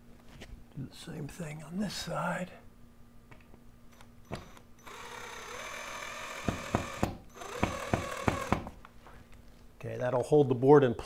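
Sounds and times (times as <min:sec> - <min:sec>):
power drill driving screw: 0:03.9 - 0:08.7.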